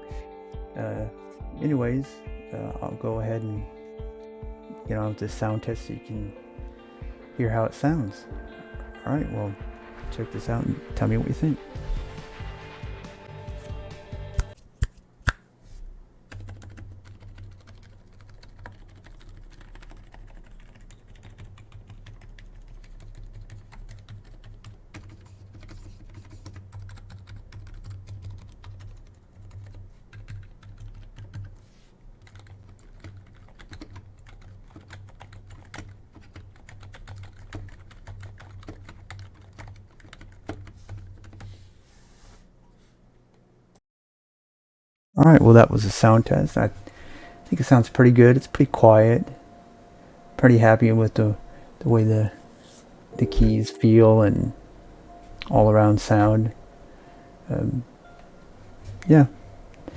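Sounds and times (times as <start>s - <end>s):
soft keyboard typing: 16.3s - 31.6s, 32.2s - 41.5s.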